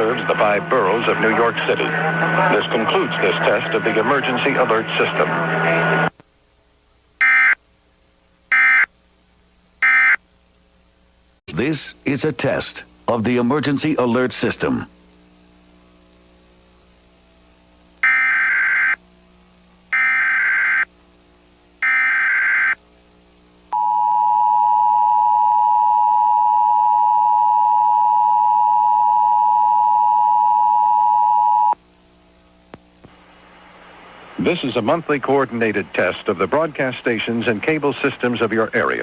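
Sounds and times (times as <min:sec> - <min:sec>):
data tone bursts: 0:18.0 - 0:19.0, 0:21.8 - 0:22.8, 0:23.7 - 0:31.8.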